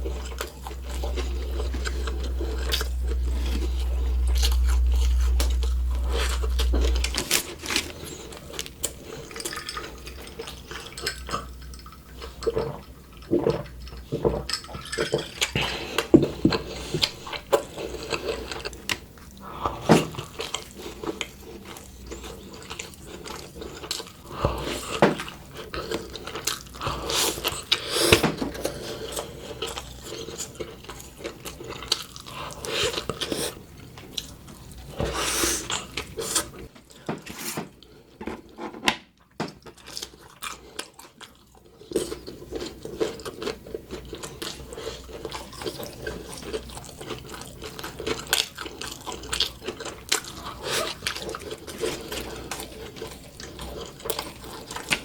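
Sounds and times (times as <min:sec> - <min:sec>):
low hum: 0:00.0 - 0:10.4
wet chewing: 0:00.0 - 0:19.4, 0:20.0 - 0:36.7, 0:39.6 - 0:55.0.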